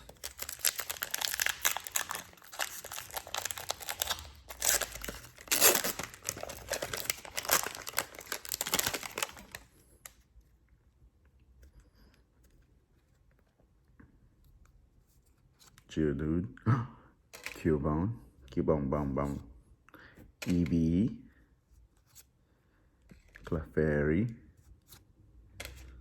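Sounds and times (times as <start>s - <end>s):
foil wrapper tearing and crinkling: 0.0s - 9.6s.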